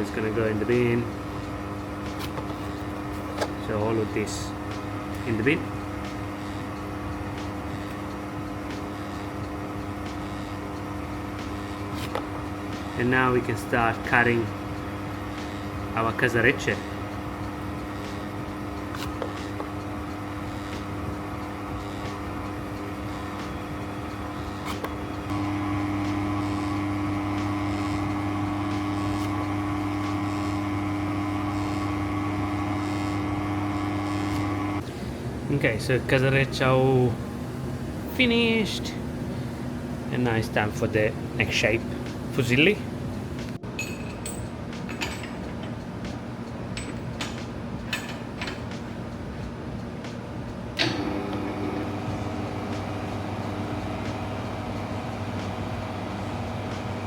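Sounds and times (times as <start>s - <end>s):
pasta extruder motor hum: 0.0s - 35.5s, 50.5s - 57.0s.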